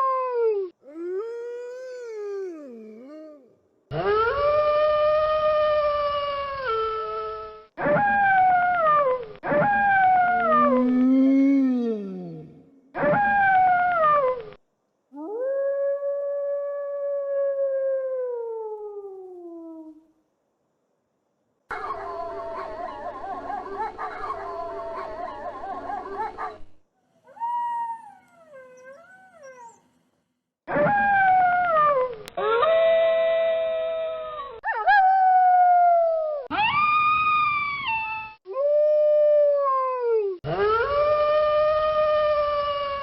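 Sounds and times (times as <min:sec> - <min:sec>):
wolves howling: 0:08.0 - 0:11.6.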